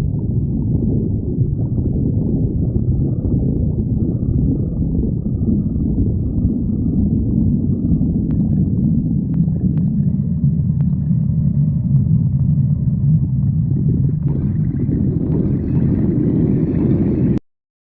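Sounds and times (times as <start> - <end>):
stomach growling: 0.0 - 17.4.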